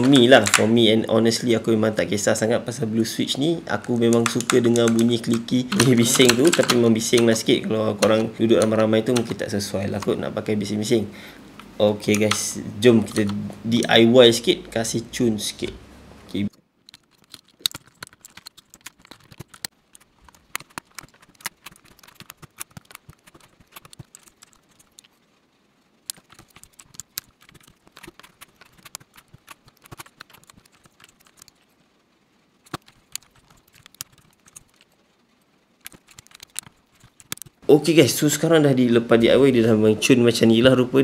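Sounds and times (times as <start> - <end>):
keycaps clicking on keyboard: 0.0 - 0.9, 3.7 - 10.2, 11.6 - 13.5, 16.4 - 25.1, 26.1 - 31.7, 32.6 - 35.0, 35.8 - 37.6.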